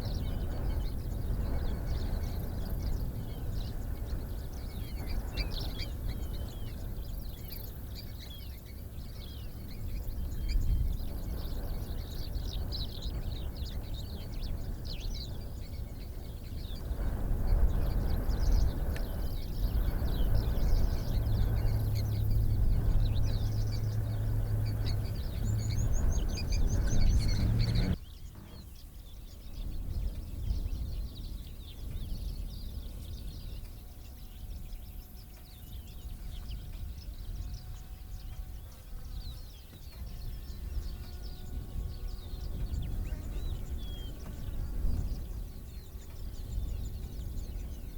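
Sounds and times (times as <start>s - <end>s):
small birds chirping: 0.0s - 47.9s
low outdoor rumble: 8.8s - 28.8s
steady low hum: 9.0s - 28.0s.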